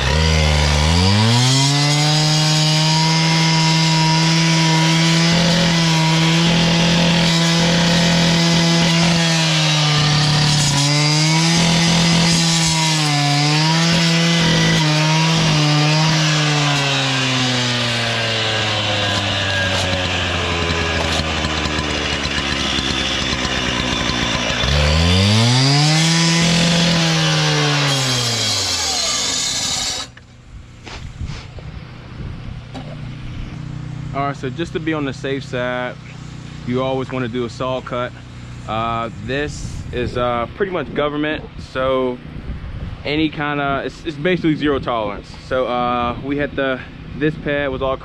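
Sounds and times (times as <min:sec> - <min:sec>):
cut-off saw cutting concrete: 0:00.0 - 0:30.2.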